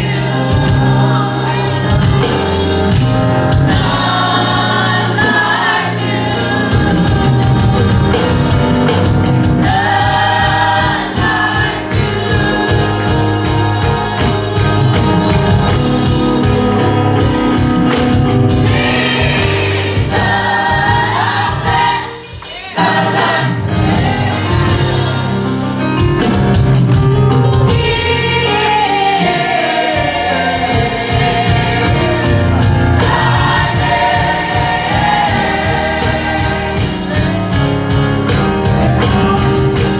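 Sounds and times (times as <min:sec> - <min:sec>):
band with bass and drums: 0:00.0 - 0:39.9
choir singing gospel music: 0:00.0 - 0:39.9.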